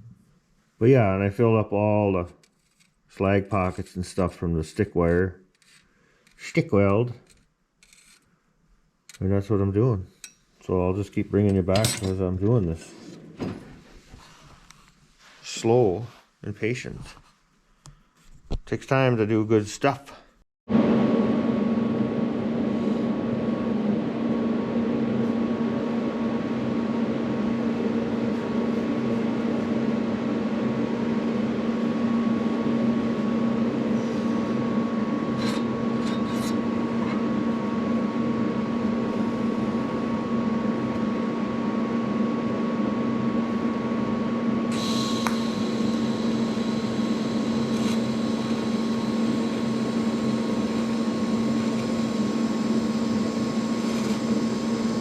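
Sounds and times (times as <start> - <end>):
welder electrical hum: 0.0 - 8.3, 9.0 - 17.2, 20.7 - 55.0
thin high whine: 20.8 - 55.0
hiss: 44.7 - 45.9.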